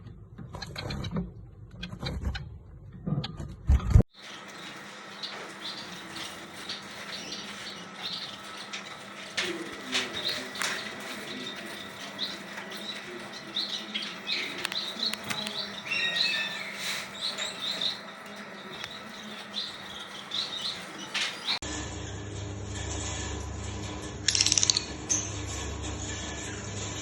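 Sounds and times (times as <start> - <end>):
parrots chirping: 4.2 - 21.6, 24.3 - 25.4.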